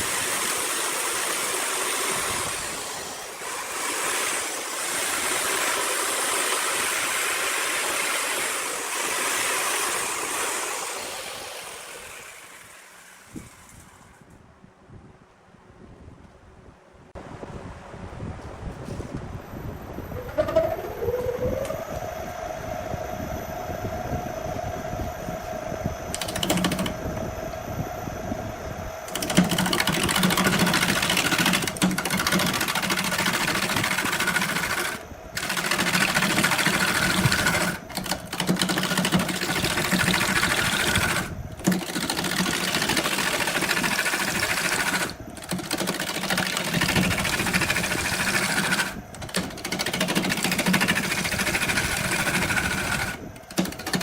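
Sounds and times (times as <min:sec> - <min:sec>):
rough cutting or sanding noise: 0:00.0 - 0:14.2
power tool motor whine: 0:00.0 - 0:14.4, 0:20.0 - 0:54.0.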